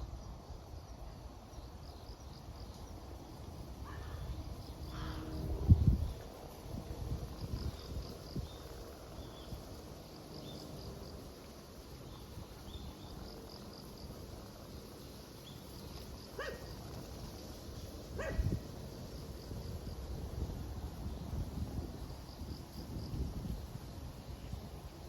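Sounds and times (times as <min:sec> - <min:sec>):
insects chirping: 0:00.0 - 0:25.0
low wind rumble: 0:00.0 - 0:25.0
dog barking: 0:16.4 - 0:16.7, 0:18.2 - 0:18.5.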